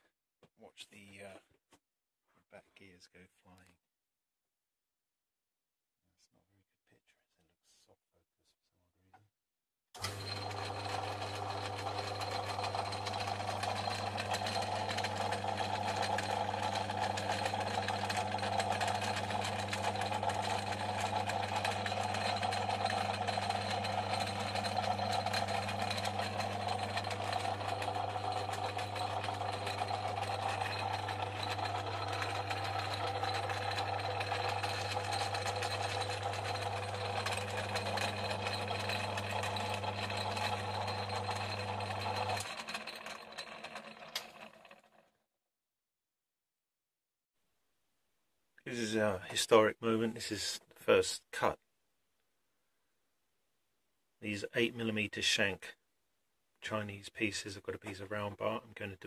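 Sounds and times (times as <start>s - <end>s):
lathe motor humming: 10.0s - 45.0s.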